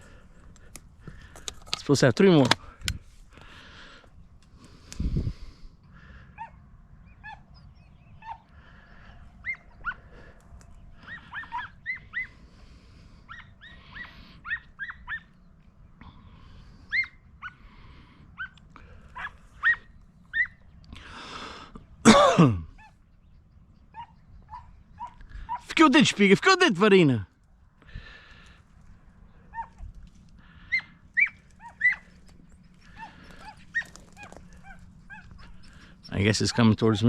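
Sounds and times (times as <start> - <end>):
dogs yipping and barking: 6.4 - 8.5, 9.4 - 10.3, 11.0 - 12.4, 13.2 - 15.4, 16.9 - 17.6, 18.3 - 20.7, 23.8 - 25.7, 29.4 - 29.9, 30.5 - 37.0.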